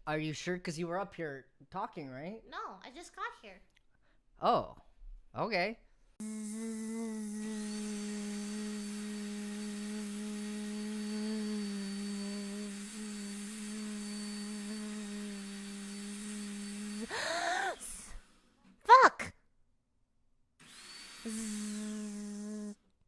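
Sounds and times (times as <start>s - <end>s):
hiss: 6.2s - 18.2s, 20.8s - 22.8s
power tool motor running: 6.2s - 18.5s, 20.6s - 22.8s.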